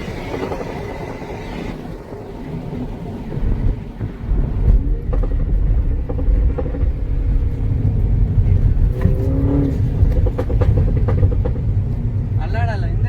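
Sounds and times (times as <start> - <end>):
car engine rumbling: 0.0 - 13.0
exhaust pops: 8.5 - 12.0.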